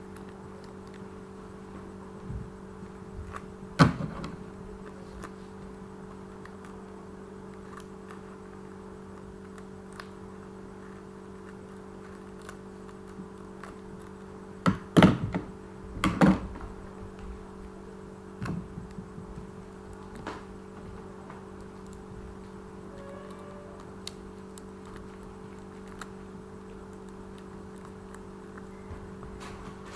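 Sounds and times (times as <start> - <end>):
steady low hum: 0.0 - 29.9.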